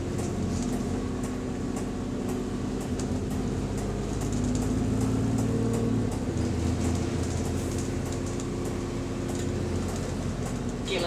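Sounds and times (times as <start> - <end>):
bus engine running: 0.0 - 11.0.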